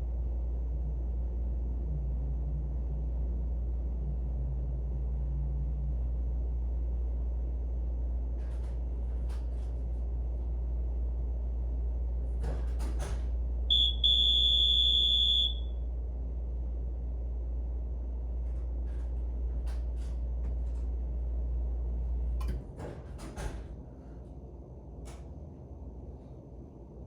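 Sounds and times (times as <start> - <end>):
steady low hum: 0.0 - 27.0
electronic doorbell beep and buzz: 13.7 - 15.7.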